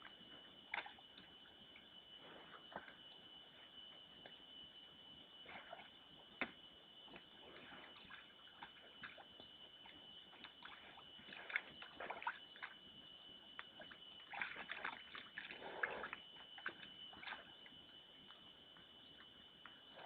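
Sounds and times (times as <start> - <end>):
faint high whine: 0.0 - 20.0
water sloshing and splashing: 5.4 - 12.8, 13.6 - 17.7.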